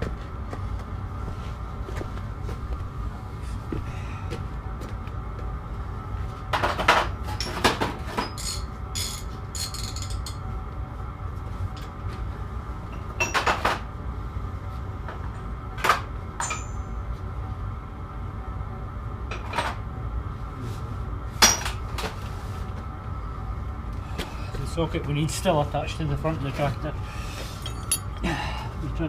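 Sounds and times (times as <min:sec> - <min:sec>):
steady low hum: 0:00.0 - 0:29.0
metal tools clanking: 0:27.5 - 0:28.3.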